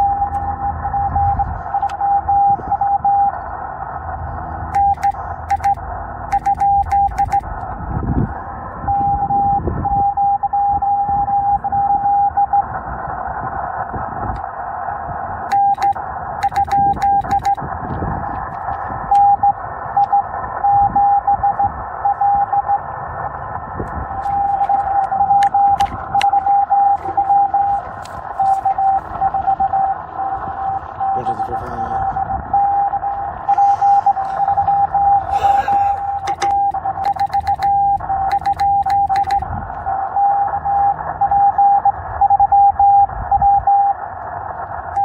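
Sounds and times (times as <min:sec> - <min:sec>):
morse code tone keying: 0:04.7 - 0:07.5, 0:15.5 - 0:17.6, 0:24.2 - 0:30.4, 0:31.0 - 0:43.9
sharp clicks: 0:04.8 - 0:07.5, 0:15.5 - 0:17.6, 0:24.3 - 0:26.4, 0:36.2 - 0:39.5
radio band hiss: 0:12.6 - 0:21.0, 0:22.8 - 0:38.5.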